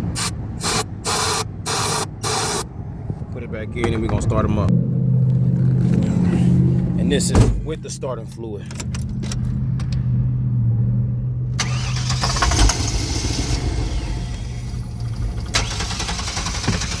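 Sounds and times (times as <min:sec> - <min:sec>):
engine running: 0:00.0 - 0:03.3, 0:04.0 - 0:17.0
thump: 0:07.3 - 0:07.6
engine cranking on starter: 0:11.6 - 0:17.0.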